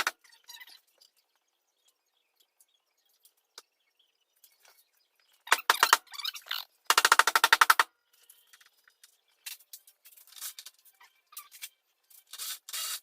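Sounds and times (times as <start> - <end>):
pneumatic wrench rattling: 12.3 - 13.0.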